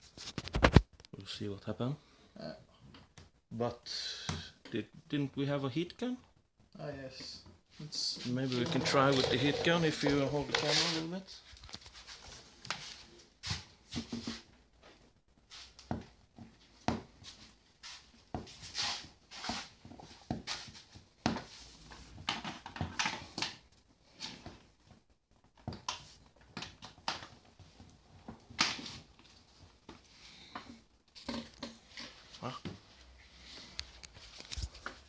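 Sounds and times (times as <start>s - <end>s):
rustling of handled objects: 7.4s - 35.0s
objects knocking and clicking: 30.6s - 32.2s.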